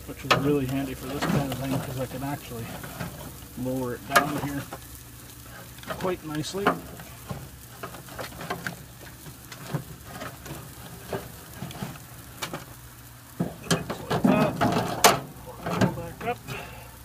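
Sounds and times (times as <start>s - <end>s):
charcoal crackling and popping: 0.0s - 17.0s
low hiss: 0.0s - 17.0s
loud clatter: 13.4s - 16.2s.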